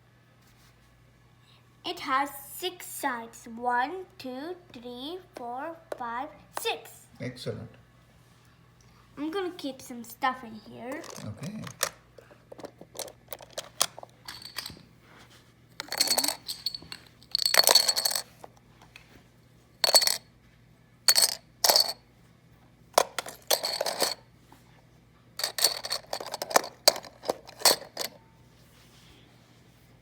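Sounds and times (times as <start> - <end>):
toys clattering into plastic box: 10.9 - 14.8, 25.4 - 28.2.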